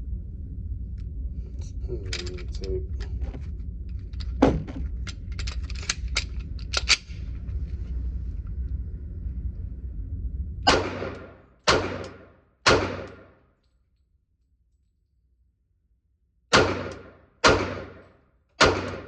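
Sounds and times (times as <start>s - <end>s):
steady low hum: 0.0s - 19.0s
gunshots with ringing tail: 10.7s - 13.4s, 16.5s - 19.0s.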